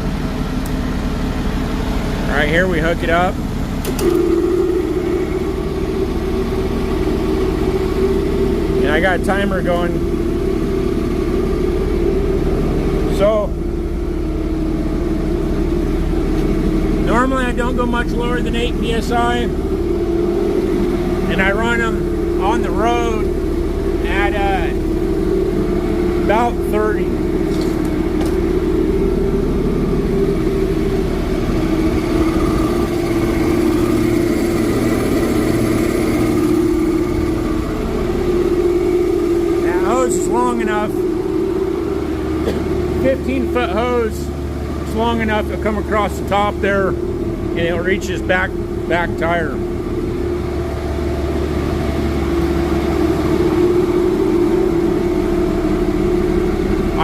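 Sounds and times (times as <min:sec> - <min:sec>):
car engine idling: 0:00.0 - 0:57.0.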